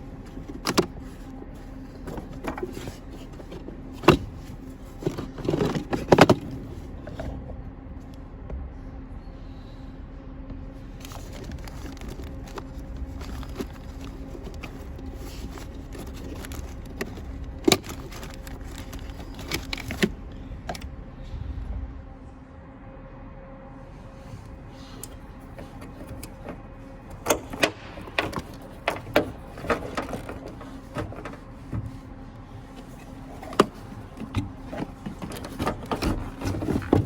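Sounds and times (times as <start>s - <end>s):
steady low hum: 0.0s - 37.0s
tools clicking and rattling: 11.0s - 20.8s, 27.2s - 31.5s.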